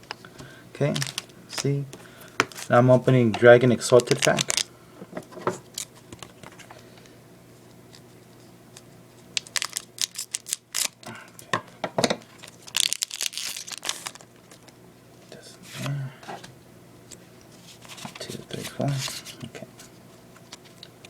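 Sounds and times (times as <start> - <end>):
foil wrapper crinkling and tearing: 0.8 - 1.8, 2.4 - 2.7, 3.8 - 4.7, 9.4 - 11.1, 12.2 - 14.8.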